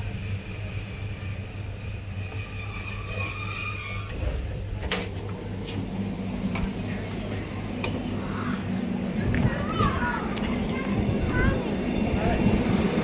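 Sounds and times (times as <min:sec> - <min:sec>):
train running with low hum: 0:00.0 - 0:13.0
faint wheel squeal: 0:01.0 - 0:04.4.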